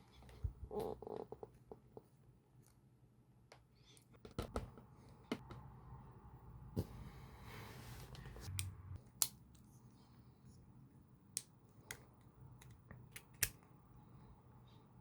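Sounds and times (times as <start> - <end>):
plastic toy parts snapping together: 12.6 - 13.6.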